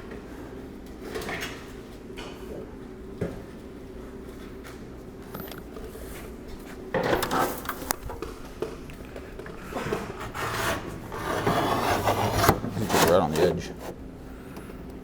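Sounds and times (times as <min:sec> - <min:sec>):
knife scraping metal panel: 0:09.7 - 0:14.0.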